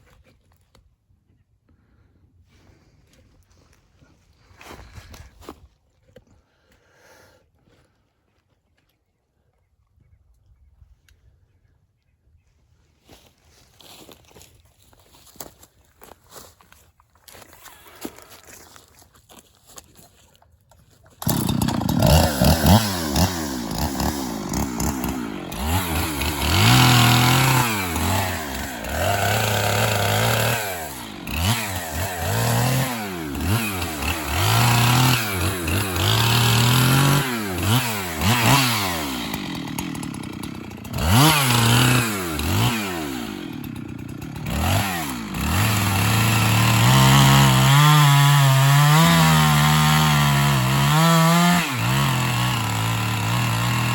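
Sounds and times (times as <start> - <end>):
chainsaw revving and cutting: 21.2 - 53.9.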